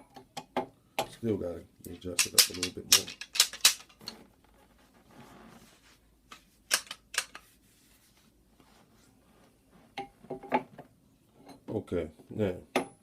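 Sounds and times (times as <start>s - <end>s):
pliers clicking metal: 6.7s - 7.4s.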